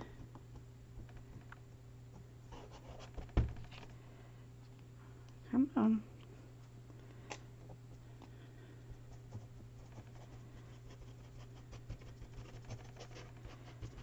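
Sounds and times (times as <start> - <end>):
low steady hum: 0.0 - 14.0
light scratching on paper: 2.5 - 3.3, 9.1 - 14.0.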